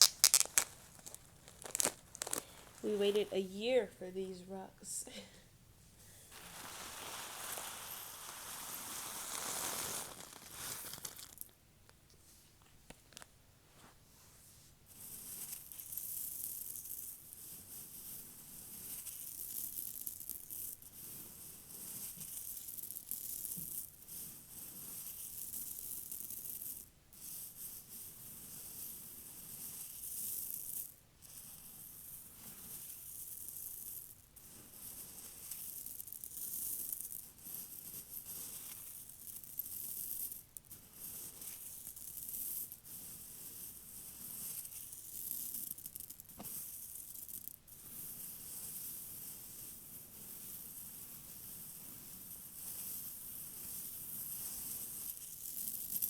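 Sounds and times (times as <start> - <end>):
stones rattling through vacuum hose: 0.0 - 3.3, 6.3 - 11.6.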